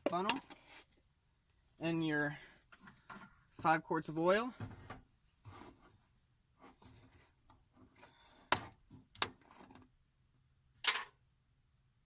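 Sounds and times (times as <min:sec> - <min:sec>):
soft rubbing of bottles: 0:00.4 - 0:01.8.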